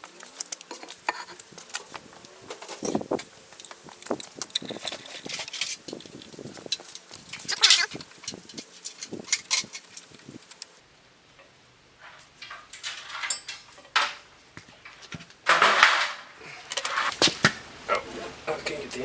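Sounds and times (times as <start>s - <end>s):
rough scraping rattle: 0.0s - 10.6s
metal tools clinking: 2.5s - 10.6s, 12.0s - 14.2s.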